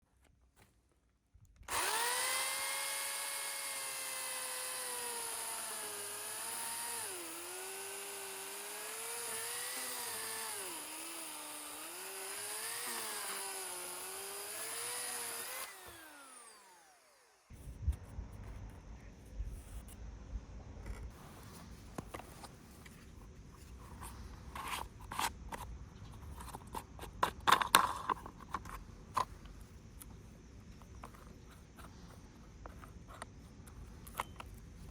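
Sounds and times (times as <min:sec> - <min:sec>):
electric power tool running: 0:01.7 - 0:17.5.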